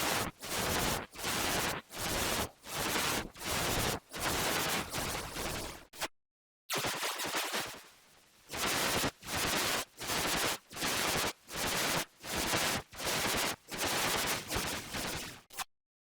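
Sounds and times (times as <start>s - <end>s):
distorted machine-gun-like bursts: 6.7s - 7.8s.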